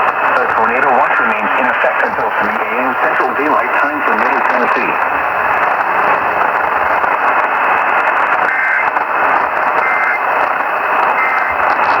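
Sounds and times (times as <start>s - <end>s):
radio static hiss: 0.0s - 12.0s
two-tone data warbles: 9.8s - 10.2s.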